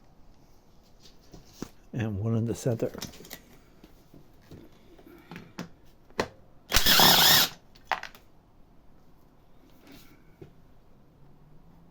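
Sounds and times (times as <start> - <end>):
power drill whirring: 6.7 - 7.6.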